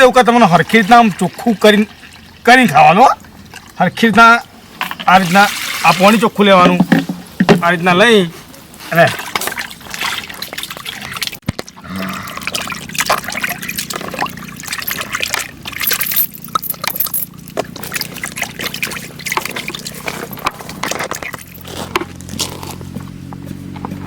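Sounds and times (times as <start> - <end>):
water pouring and splashing: 0.2 - 8.0, 8.6 - 21.7.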